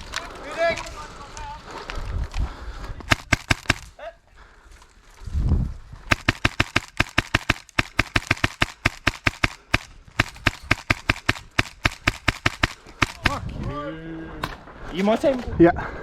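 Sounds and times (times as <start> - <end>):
airsoft rifle firing: 3.1 - 4.0, 6.1 - 13.5.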